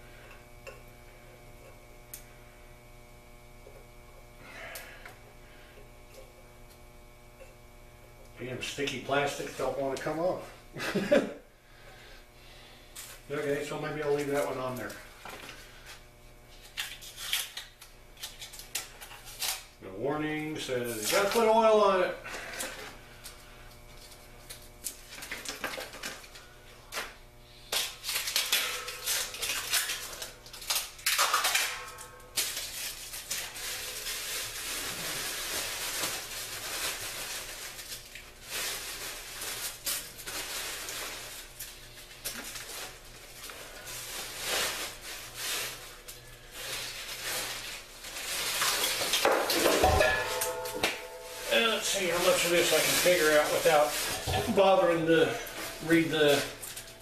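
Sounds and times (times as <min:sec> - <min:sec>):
plastic and paper crinkling: 0:20.9 - 0:21.7, 0:27.8 - 0:57.0
clinks and knocks: 0:49.3 - 0:51.4.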